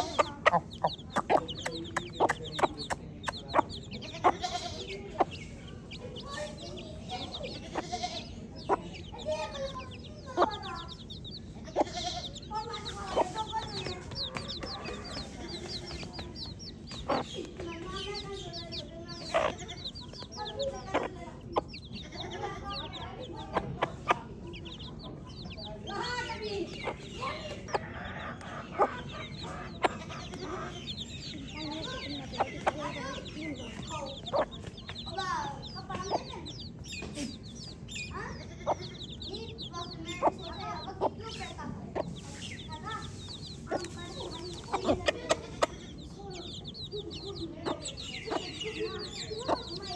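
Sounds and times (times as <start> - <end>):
low clucking calls: 0.0 - 18.2, 25.9 - 37.5
baby chicks peeping: 0.0 - 49.9.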